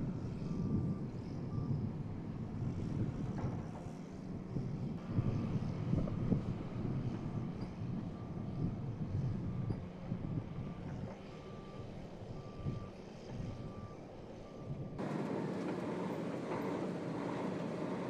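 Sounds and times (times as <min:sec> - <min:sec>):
low rumbling vehicle engine: 0:00.0 - 0:18.0
reversing alarm beeping: 0:09.5 - 0:18.0
broad rushing noise: 0:15.0 - 0:18.0.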